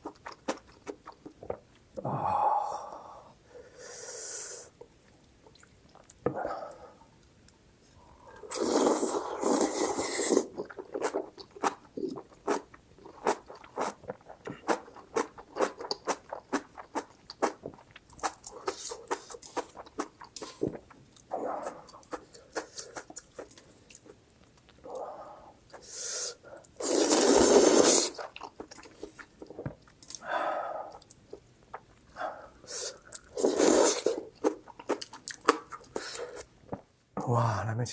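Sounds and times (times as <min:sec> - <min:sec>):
noodle slurping: 0:08.5 - 0:11.8, 0:25.8 - 0:28.4, 0:32.7 - 0:34.6.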